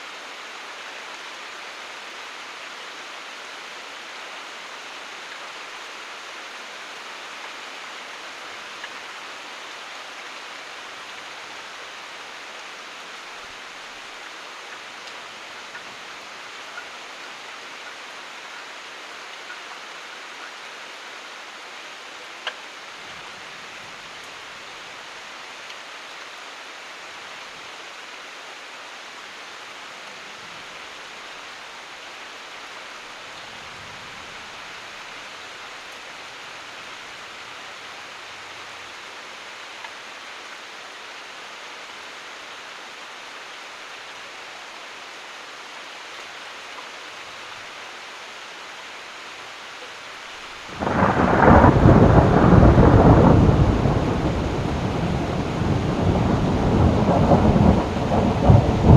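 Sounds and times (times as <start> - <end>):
steady rain: 0.0 - 58.9
thunder clap and rumble: 50.8 - 58.9.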